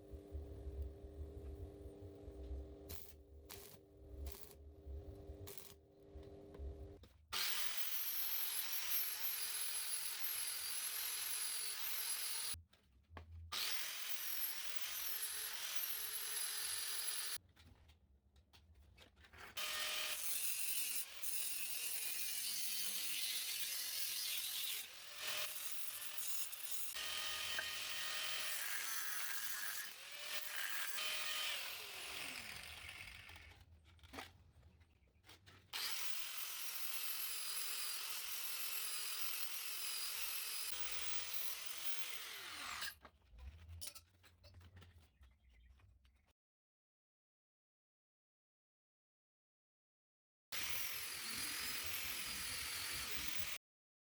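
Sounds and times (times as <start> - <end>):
power tool grinding steel: 7.4 - 12.6, 13.6 - 17.4, 19.5 - 33.6, 35.8 - 43.0, 50.6 - 53.6
clicks and handling sounds: 32.9 - 35.8.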